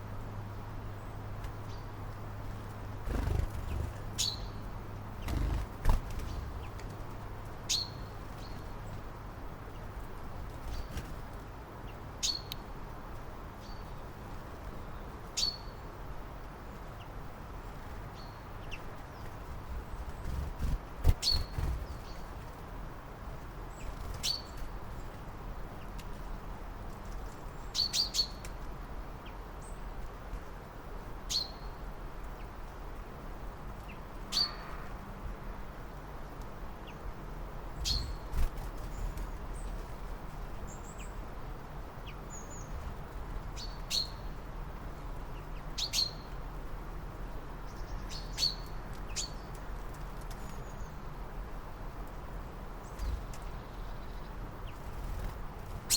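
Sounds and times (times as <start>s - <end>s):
small bird chirping: 3.0s - 6.9s, 7.7s - 9.0s, 14.8s - 15.8s, 18.1s - 22.4s, 23.7s - 25.1s, 27.2s - 28.5s, 33.9s - 34.7s, 37.8s - 39.8s, 42.0s - 44.4s, 45.3s - 46.4s, 47.6s - 51.0s, 52.8s - 55.9s.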